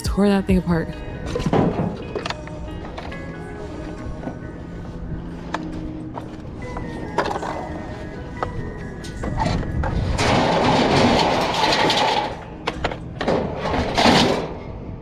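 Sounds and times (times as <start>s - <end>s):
clicks and knocks of scrap: 10.2s - 14.6s.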